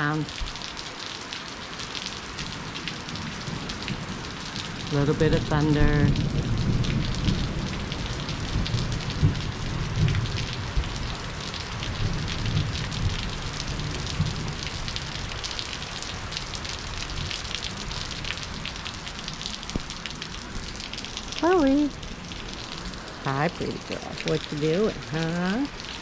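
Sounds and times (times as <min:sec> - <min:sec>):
heavy rain falling: 0:00.0 - 0:26.0
distant thunder rumble: 0:03.6 - 0:15.2.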